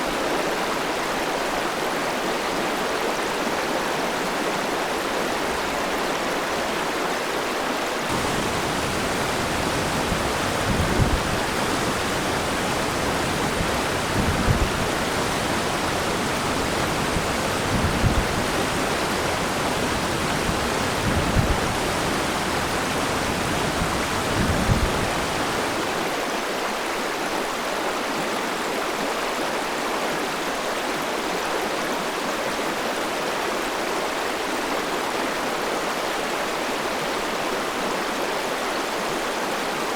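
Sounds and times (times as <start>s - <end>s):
river water rushing over stones: 8.1s - 26.2s.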